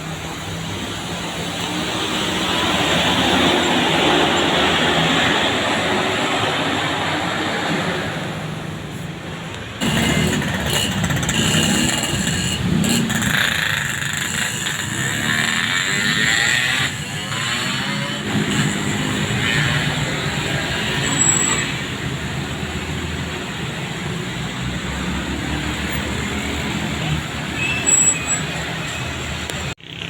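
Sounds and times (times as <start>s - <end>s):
bus passing close by: 0.0s - 30.0s
loud passing vehicle: 1.2s - 8.4s.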